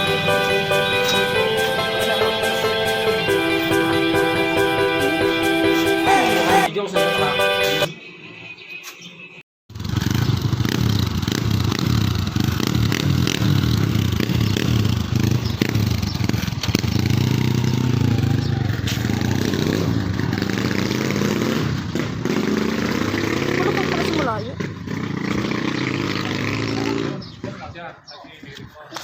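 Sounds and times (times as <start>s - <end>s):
motorcycle engine running roughly: 9.8s - 19.4s.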